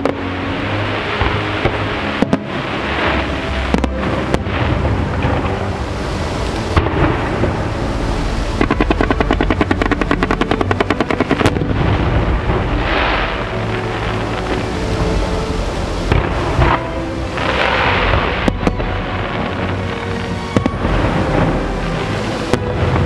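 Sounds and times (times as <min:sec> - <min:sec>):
fireworks rumble and cracks: 0:00.0 - 0:23.0.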